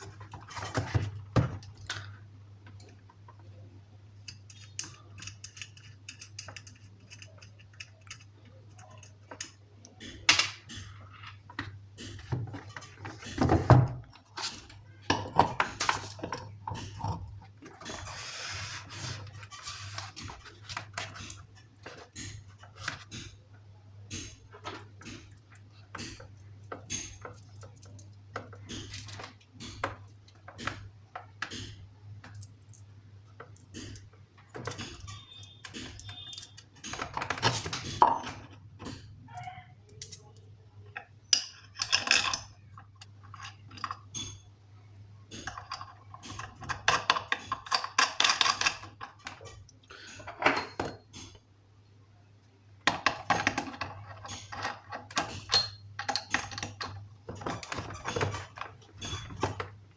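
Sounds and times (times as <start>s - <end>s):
metal parts and tools clinking: 24.1s - 30.7s, 33.5s - 38.6s, 39.3s - 44.5s, 45.3s - 51.4s, 52.9s - 59.8s.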